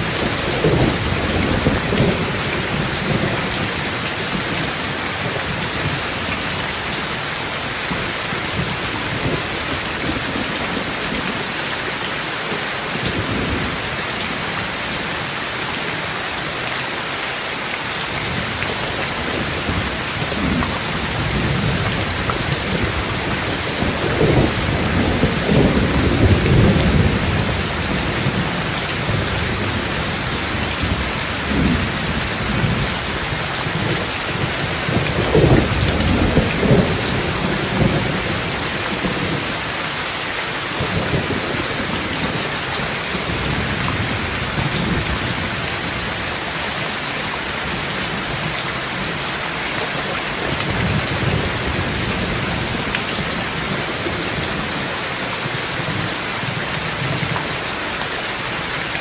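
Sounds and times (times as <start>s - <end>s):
steady rain: 0.0s - 59.0s
rolling thunder: 19.2s - 39.6s.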